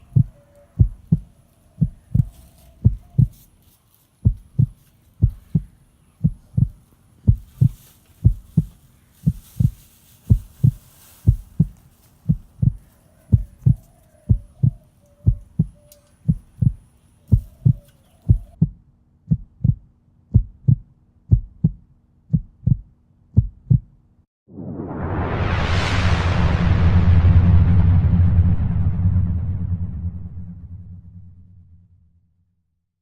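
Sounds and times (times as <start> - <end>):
low heartbeat-like thumping: 0.0 - 3.4, 4.2 - 24.0.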